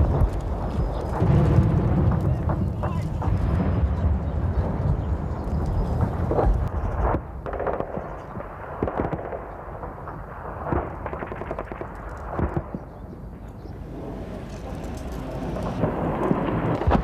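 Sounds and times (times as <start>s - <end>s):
heavy blasts: 0.0s - 12.8s, 13.8s - 17.0s
gunshots: 0.0s - 13.0s, 13.8s - 17.0s
low rumble: 13.7s - 17.0s.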